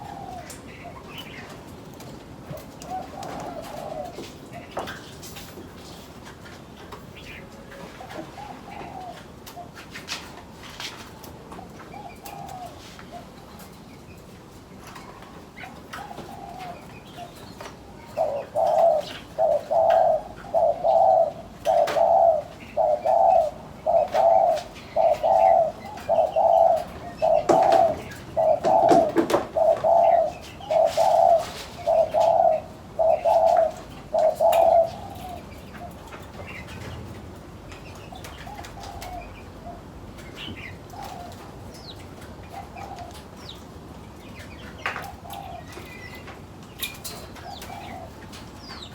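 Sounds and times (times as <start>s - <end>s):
dove cooing: 0.0s - 1.6s, 2.5s - 4.8s, 7.8s - 9.8s, 11.6s - 13.7s, 15.5s - 36.9s, 40.5s - 41.6s, 42.5s - 43.3s, 45.0s - 46.1s, 47.3s - 48.4s
small birds chirping: 11.8s - 48.9s.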